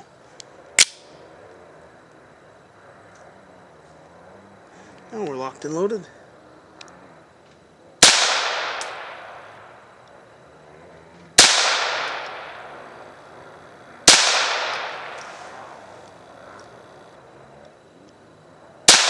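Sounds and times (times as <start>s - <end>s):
pistol shots echoing: 8.0s - 9.5s, 11.4s - 12.8s, 14.0s - 15.2s.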